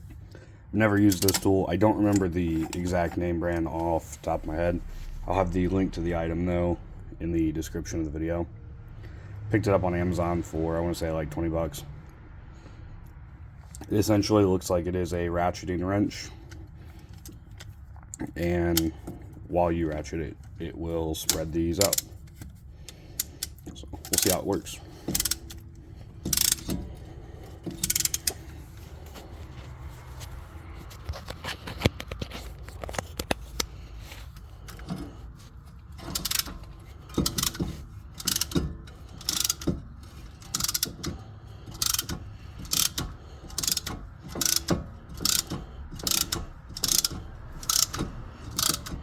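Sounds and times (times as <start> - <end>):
ratchet tool pawl clicking: 1.0 - 1.5, 21.2 - 28.8, 33.5 - 49.0.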